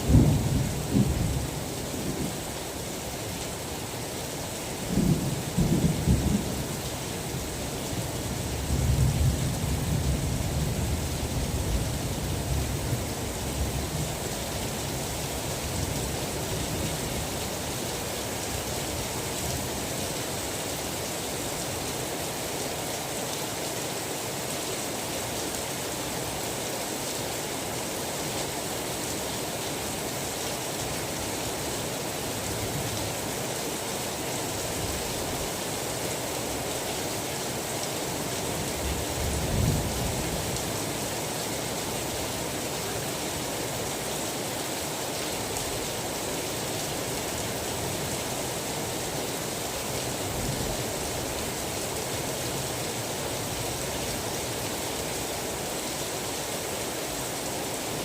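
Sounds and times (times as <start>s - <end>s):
low rumble of thunder: 0.0s - 2.4s
heavy rain hiss: 0.0s - 58.0s.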